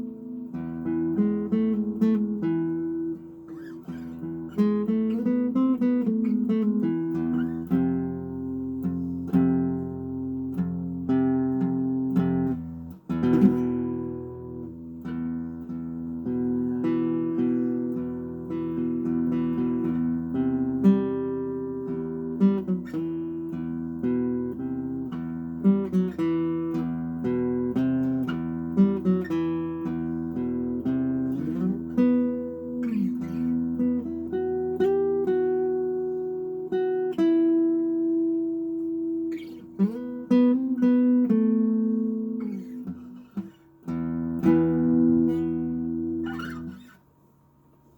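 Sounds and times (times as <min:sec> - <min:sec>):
acoustic guitar picking and chords: 0:00.0 - 0:47.9.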